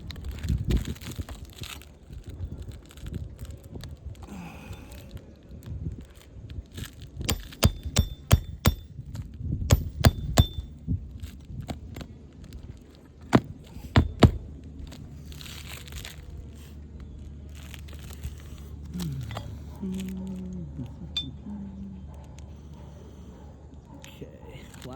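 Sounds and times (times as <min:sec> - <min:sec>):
hammer knocking on metal tool: 0:07.3 - 0:08.9, 0:09.7 - 0:10.7, 0:13.4 - 0:14.4.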